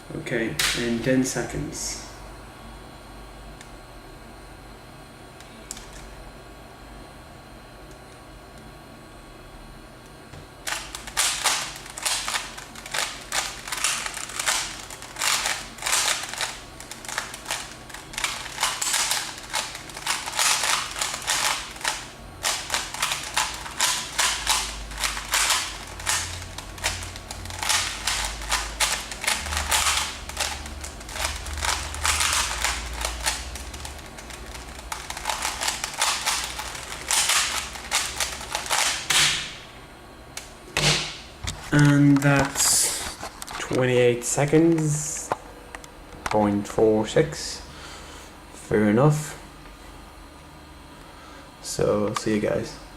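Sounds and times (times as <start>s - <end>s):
rubik's cube plastic clacking: 10.7s - 39.2s.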